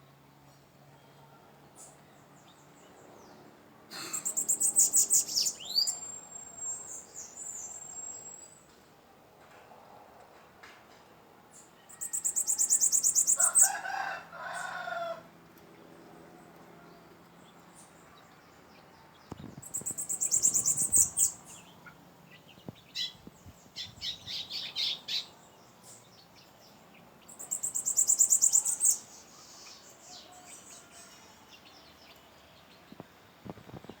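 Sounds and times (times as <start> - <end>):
short bird calls: 3.9 - 6.9
lower bird call: 3.9 - 8.6, 19.4 - 22.0, 27.4 - 31.8
high buzzy bird trill: 19.7 - 21.6.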